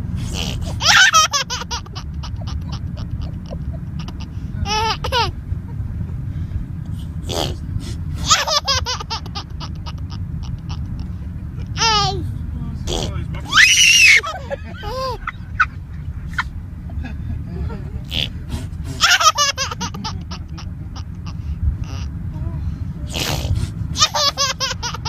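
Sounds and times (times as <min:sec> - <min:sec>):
steady low rumble: 0:00.0 - 0:25.0
baby laughing: 0:00.3 - 0:05.4, 0:07.3 - 0:07.6, 0:08.2 - 0:12.2, 0:12.9 - 0:16.5, 0:17.7 - 0:22.2, 0:23.1 - 0:25.0.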